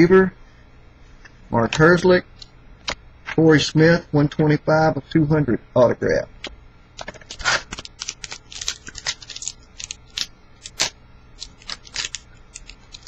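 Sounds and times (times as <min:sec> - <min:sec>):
cards sliding and flicking: 0:07.0 - 0:13.0
wrapper crinkling and tearing: 0:07.2 - 0:13.0.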